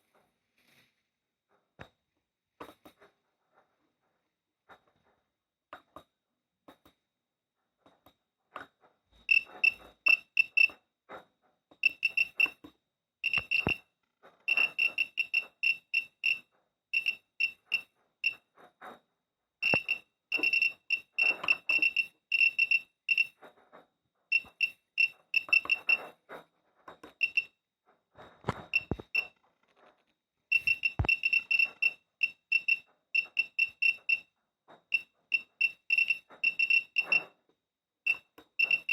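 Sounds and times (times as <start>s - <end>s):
geiger counter pips: 28.5s - 29.3s, 30.5s - 31.9s.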